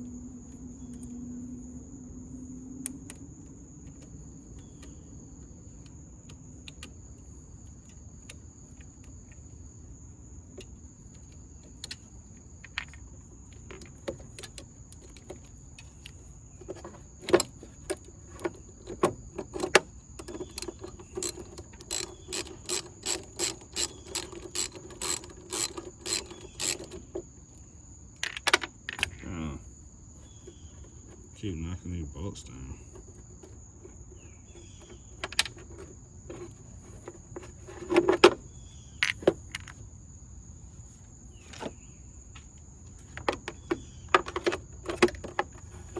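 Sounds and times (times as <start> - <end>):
ratchet wrench strokes: 19.5 - 27.1.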